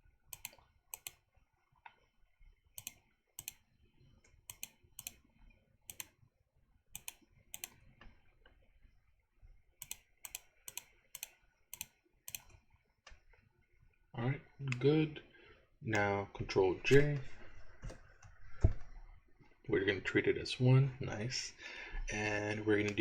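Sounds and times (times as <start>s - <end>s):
mouse and keyboard clicks: 0.3s - 1.2s, 2.8s - 3.7s, 4.5s - 5.2s, 5.9s - 6.2s, 7.0s - 7.8s, 9.8s - 12.6s.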